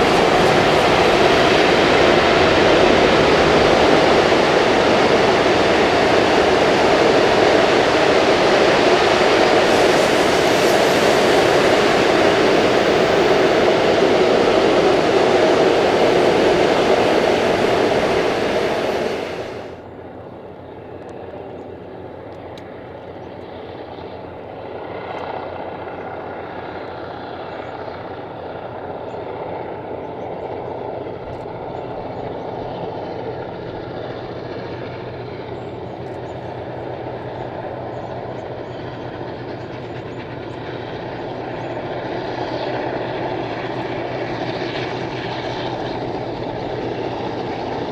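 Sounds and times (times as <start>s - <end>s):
train running: 0.0s - 19.8s, 33.9s - 47.9s.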